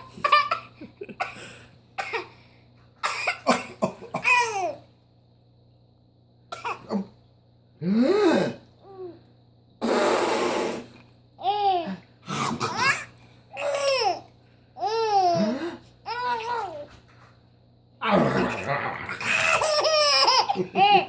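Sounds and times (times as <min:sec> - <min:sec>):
baby laughing: 0:04.2 - 0:04.8, 0:12.6 - 0:16.9, 0:19.2 - 0:21.0.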